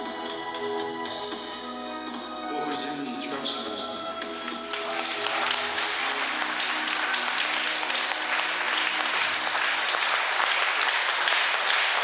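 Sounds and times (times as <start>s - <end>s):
audience applauding: 4.4s - 12.0s.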